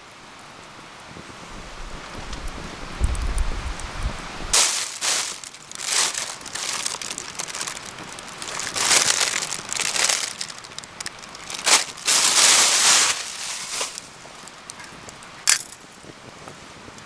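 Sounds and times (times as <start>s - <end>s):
rustling and crinkling: 1.5s - 16.6s.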